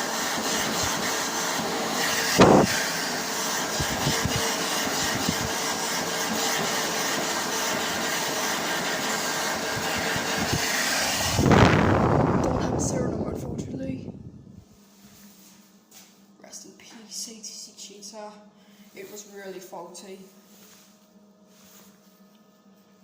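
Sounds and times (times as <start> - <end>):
hand dryer blowing: 0.0 - 15.2
thump: 2.4 - 2.7.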